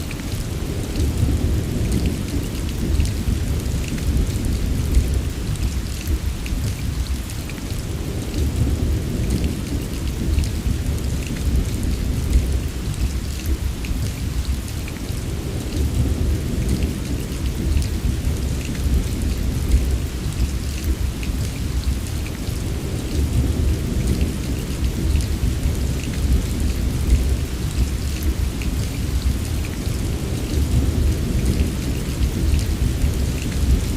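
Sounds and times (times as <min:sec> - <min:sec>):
heavy rain: 0:00.0 - 0:33.9
distant thunder rumble: 0:21.9 - 0:33.9.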